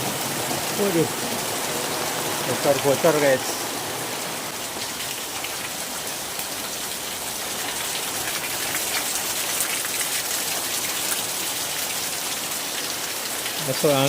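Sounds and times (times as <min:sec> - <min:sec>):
steady rain falling: 0:00.0 - 0:14.0
drops dripping through leaking roof: 0:04.5 - 0:14.0.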